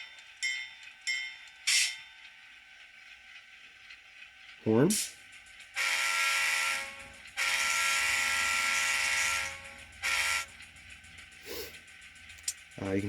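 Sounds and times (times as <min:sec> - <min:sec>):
locomotive horn through small speaker: 0:05.8 - 0:10.5.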